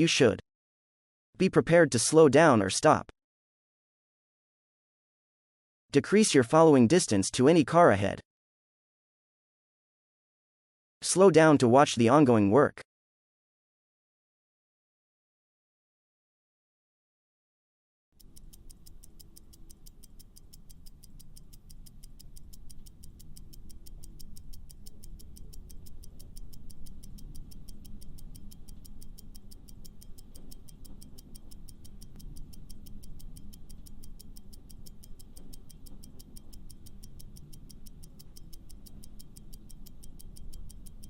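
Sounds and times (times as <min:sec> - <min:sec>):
clock-style timer ticking: 0:18.2 - 0:41.0.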